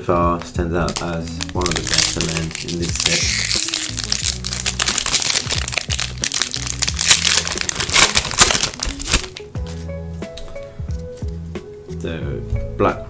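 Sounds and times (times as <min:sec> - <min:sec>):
background music: 0:00.0 - 0:13.0
foil wrapper crinkling: 0:00.9 - 0:09.8.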